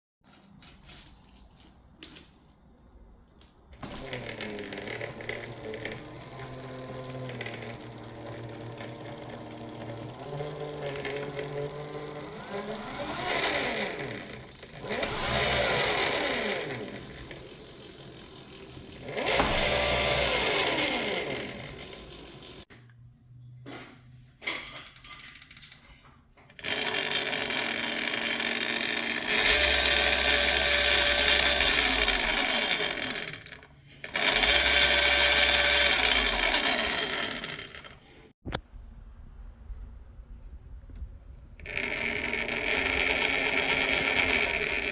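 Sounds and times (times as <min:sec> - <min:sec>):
electric bike motor running: 0:03.8 - 0:22.7, 0:26.6 - 0:38.0, 0:41.6 - 0:44.9
rattle inside motor: 0:03.8 - 0:22.7, 0:26.6 - 0:38.1.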